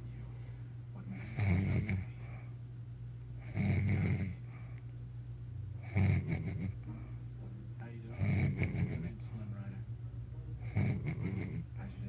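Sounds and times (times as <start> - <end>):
man snoring: 1.2 - 2.2, 3.4 - 4.4, 5.8 - 6.8, 8.1 - 9.2, 10.6 - 11.7.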